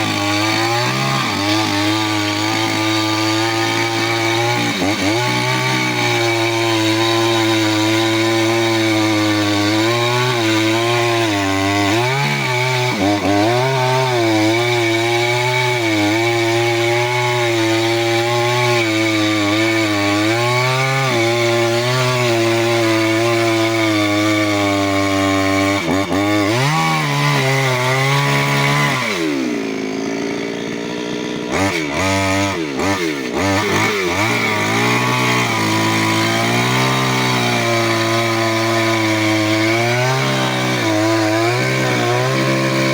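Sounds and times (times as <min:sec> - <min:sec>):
chainsaw cutting wood: 0:00.0 - 0:42.9
chainsaw revving: 0:00.0 - 0:42.9.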